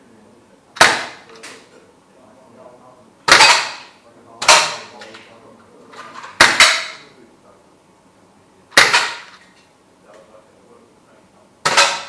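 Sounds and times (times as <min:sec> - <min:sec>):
air gun shots: 0:00.8 - 0:01.3, 0:03.3 - 0:03.9, 0:06.4 - 0:07.0, 0:08.8 - 0:09.4.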